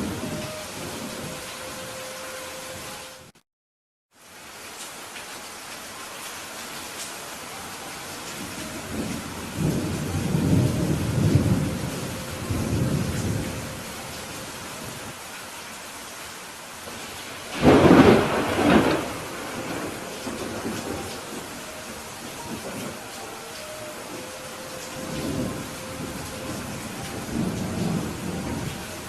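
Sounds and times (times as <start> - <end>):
steady rain falling: 0.0 - 3.3, 4.1 - 29.0
thunder rolling low: 8.6 - 14.1, 16.9 - 29.0
sharp thunderclap: 17.5 - 21.4.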